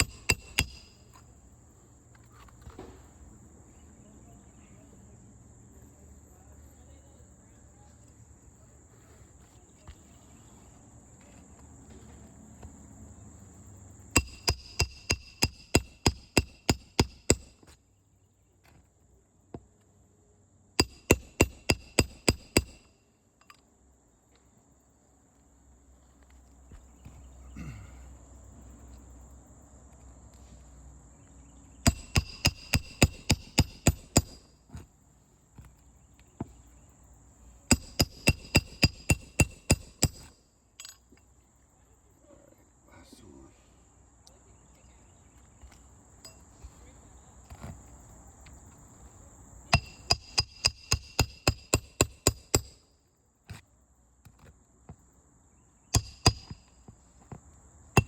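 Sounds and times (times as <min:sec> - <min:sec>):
hammer driving nails: 0:00.0 - 0:01.0, 0:14.2 - 0:17.5, 0:20.8 - 0:22.9, 0:31.8 - 0:34.8, 0:37.7 - 0:40.9, 0:49.8 - 0:52.8, 0:55.9 - 0:56.6
high insect trill: 0:00.0 - 0:58.0.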